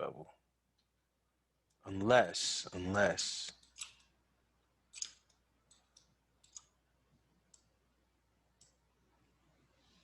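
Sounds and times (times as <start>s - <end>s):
computer mouse clicks: 4.9s - 6.8s, 8.6s - 8.8s.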